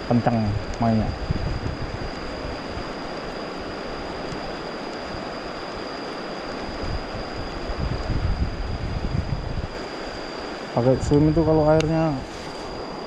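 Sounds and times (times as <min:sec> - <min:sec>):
flowing water rushing: 0:09.7 - 0:11.0.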